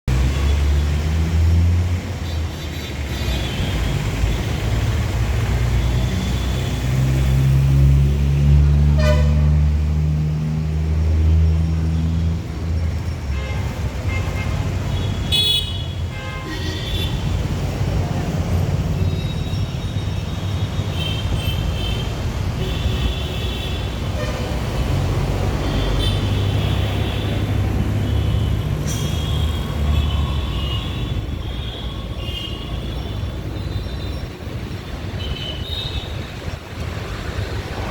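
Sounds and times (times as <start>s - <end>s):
road traffic rumble: 0.0s - 37.9s
vehicle horns tooting: 8.9s - 9.6s, 13.4s - 17.3s.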